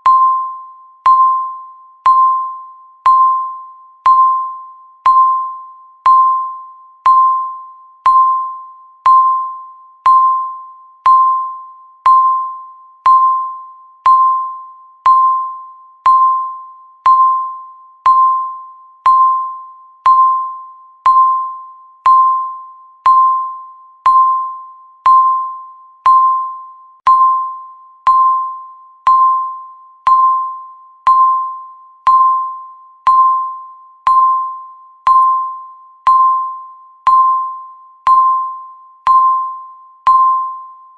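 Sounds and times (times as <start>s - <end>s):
high bell-like timer beep: 0.0s - 40.9s.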